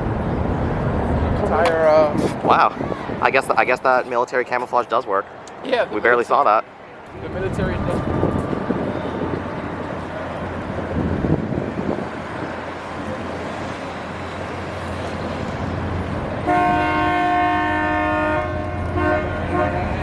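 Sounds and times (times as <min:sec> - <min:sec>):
outdoor background noise: 0:00.0 - 0:20.0
loud multi-tone horn blast: 0:07.6 - 0:10.4, 0:16.4 - 0:20.0.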